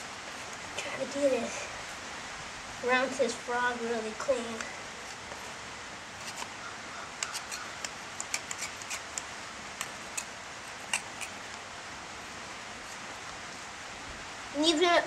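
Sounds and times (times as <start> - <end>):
hoof pick scraping hoof: 6.2 - 6.5, 7.2 - 11.6.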